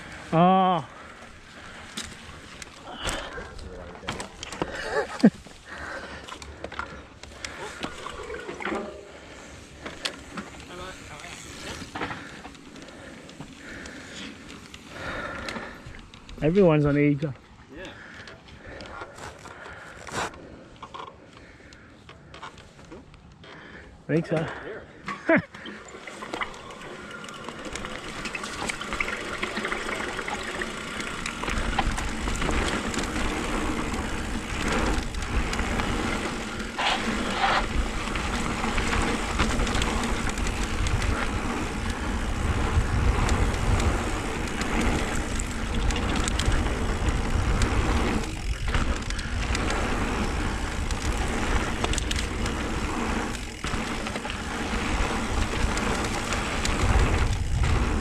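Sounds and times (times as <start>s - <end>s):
bike tyres rolling and rattling: 0.0s - 58.0s
wind buffeting microphone: 37.6s - 58.0s.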